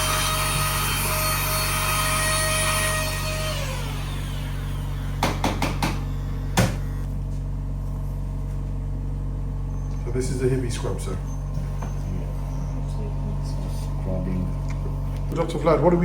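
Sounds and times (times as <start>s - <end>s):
electric clippers whining: 0.0s - 7.4s
low equipment hum: 2.9s - 16.0s.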